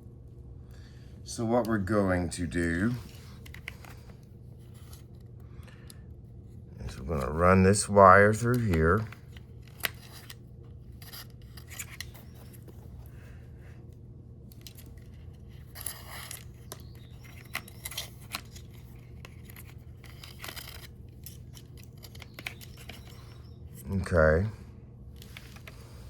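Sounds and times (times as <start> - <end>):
scratchy rustles of wire: 6.5 - 26.0.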